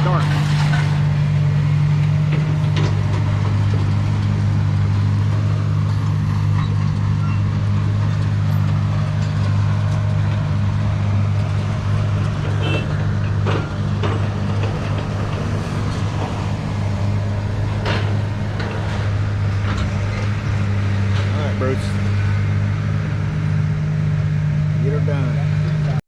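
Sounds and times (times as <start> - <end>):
vehicle engine droning: 0.0 - 26.0.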